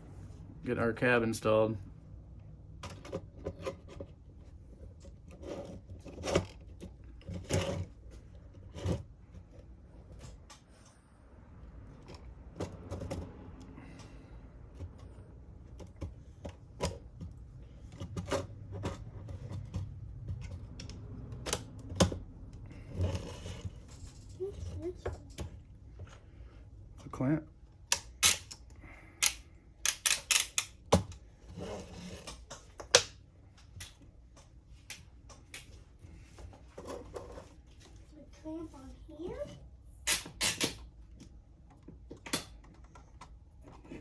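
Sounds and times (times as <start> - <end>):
plastic parts clicking and knocking: 2.8 - 10.5, 27.8 - 31.3, 40.0 - 44.0.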